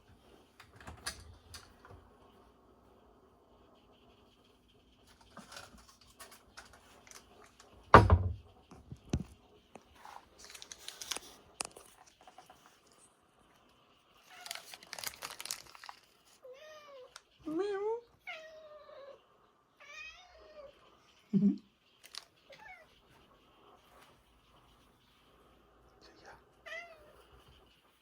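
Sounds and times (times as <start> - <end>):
loud thump: 8.0 - 8.4
packaging crinkling and tearing: 10.3 - 12.2, 14.2 - 16.4, 22.0 - 22.3.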